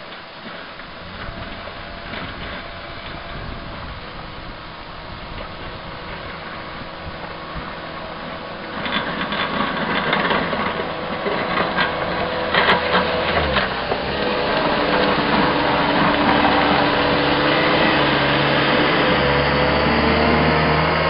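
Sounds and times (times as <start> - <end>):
diesel engine running: 0.0 - 21.0
rattling clatter: 5.3 - 18.8.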